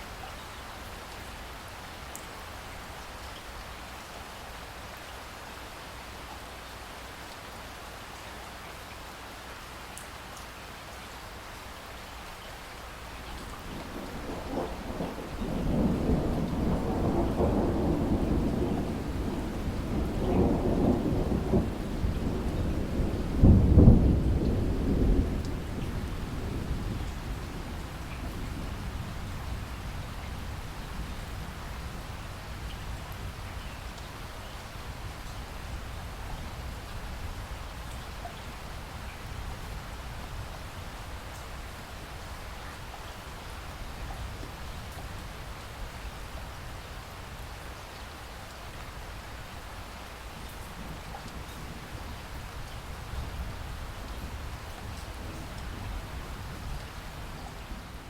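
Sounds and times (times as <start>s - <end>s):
steady rainfall: 0.0s - 58.0s
rolling thunder: 13.4s - 33.7s.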